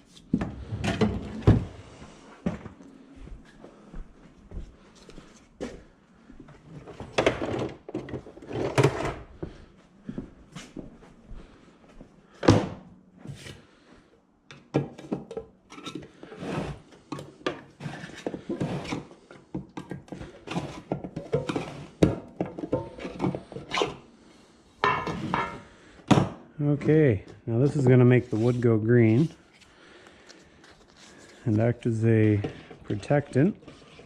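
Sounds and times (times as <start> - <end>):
objects knocking and thunking: 0.3 - 1.8, 6.8 - 9.5, 14.5 - 16.3, 17.0 - 23.7, 24.8 - 28.1, 32.3 - 34.0.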